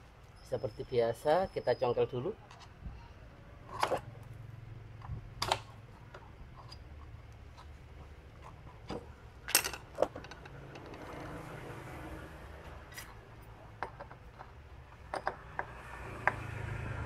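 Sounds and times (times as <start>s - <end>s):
metal tools clinking on metal parts: 8.9s - 11.2s.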